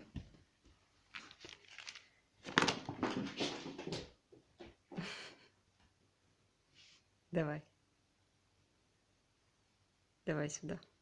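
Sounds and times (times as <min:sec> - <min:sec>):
cat rustling and scuffling: 0:00.0 - 0:05.1.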